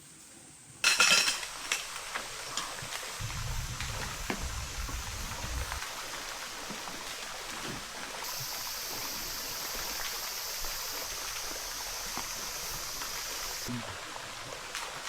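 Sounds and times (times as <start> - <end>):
steady high hiss: 0.0 - 13.8
water lapping and trickling: 1.3 - 15.0
small water splashes: 1.5 - 15.0
low rumble: 3.2 - 6.2.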